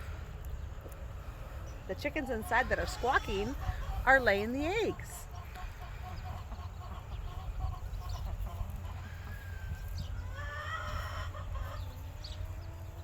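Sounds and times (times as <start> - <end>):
hens clucking: 0.0 - 13.0
hen squawking: 2.3 - 5.2.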